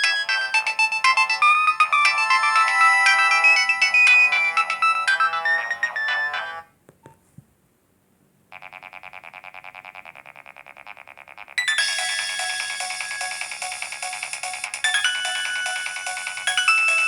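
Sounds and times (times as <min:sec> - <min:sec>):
electronic ringtone melody: 0:00.0 - 0:06.7, 0:11.6 - 0:17.0
rapid pulsing ringtone: 0:00.0 - 0:06.7, 0:11.6 - 0:17.0.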